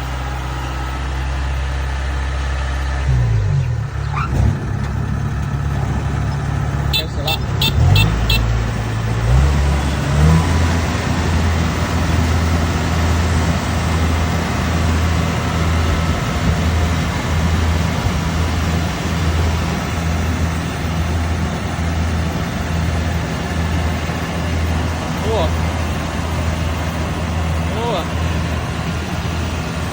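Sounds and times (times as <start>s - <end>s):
combine harvester engine throbbing: 0.0s - 29.9s
machinery clatter: 3.6s - 9.0s.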